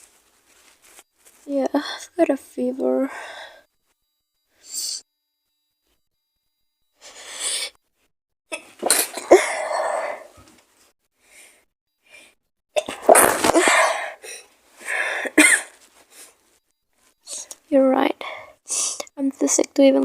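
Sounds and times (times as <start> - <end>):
quick breaths: 3.1 - 3.7, 11.2 - 12.4, 13.5 - 15.4
woman coughing: 8.5 - 10.2, 15.3 - 15.8.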